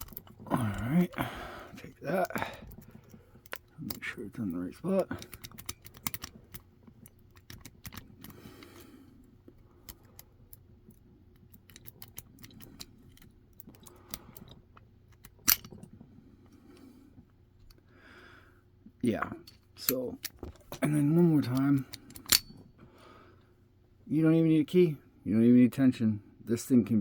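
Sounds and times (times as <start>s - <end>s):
lock pick scraping and clicking: 0.0s - 1.2s, 1.8s - 16.0s, 19.4s - 22.6s.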